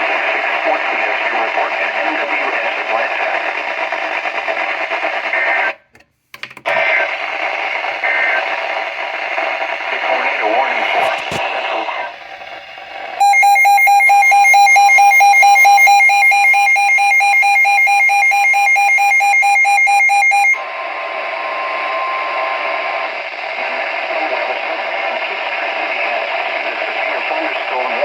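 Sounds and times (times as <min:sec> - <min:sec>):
radio static hiss: 0:00.0 - 0:05.9, 0:06.7 - 0:13.2, 0:20.6 - 0:28.0
faint steady warning tone: 0:13.2 - 0:23.1
rapidly pulsing electronic beep: 0:13.2 - 0:23.2.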